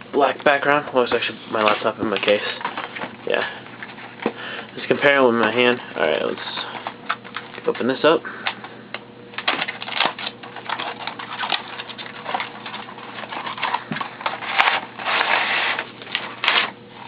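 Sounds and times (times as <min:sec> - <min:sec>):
box being opened and handled: 0:09.4 - 0:16.8
rustling scrape: 0:10.6 - 0:16.8.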